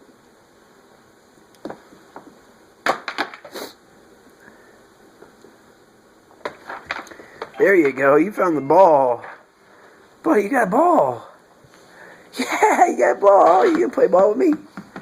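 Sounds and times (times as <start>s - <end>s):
toys knocking and clattering: 13.4s - 15.0s.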